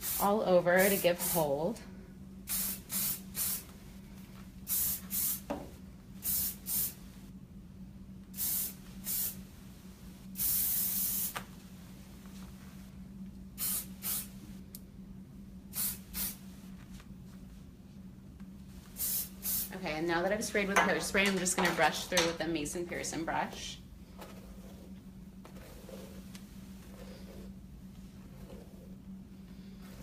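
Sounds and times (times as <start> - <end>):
hairspray hissing bursts: 0.0 - 1.5, 2.5 - 3.7, 4.7 - 5.5, 6.2 - 7.0, 8.4 - 9.4, 10.4 - 11.4, 13.6 - 14.3, 15.7 - 16.4, 18.9 - 19.8.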